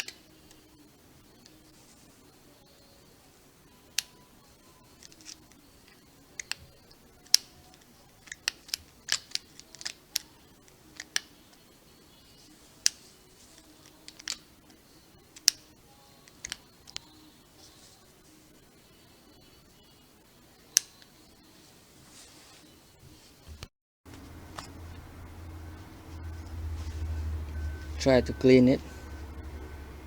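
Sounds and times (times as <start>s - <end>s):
clicks of small hard parts: 7.3s - 10.3s, 11.0s - 11.3s, 13.8s - 14.4s, 15.4s - 15.6s.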